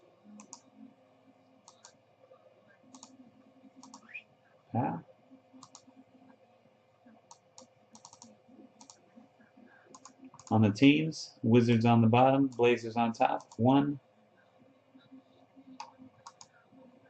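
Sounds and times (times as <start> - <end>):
computer mouse clicks: 0.3 - 0.7, 1.6 - 2.0, 2.9 - 3.2, 3.8 - 4.2, 5.6 - 6.4, 7.2 - 9.0, 9.8 - 10.6, 15.0 - 16.9.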